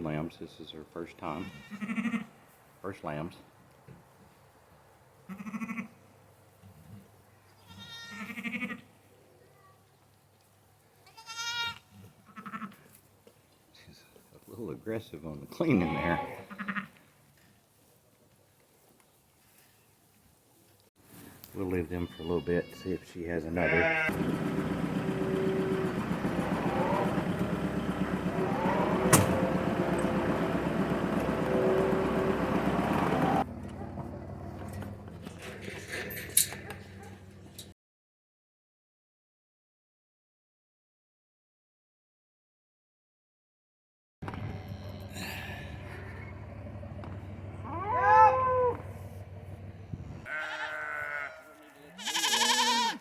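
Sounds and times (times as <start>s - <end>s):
sheep bleating: 1.3s - 2.3s, 7.6s - 8.8s, 11.1s - 12.8s, 15.7s - 16.9s, 23.6s - 24.1s, 50.2s - 53.0s
vehicle engine running: 24.1s - 35.9s, 44.2s - 50.2s.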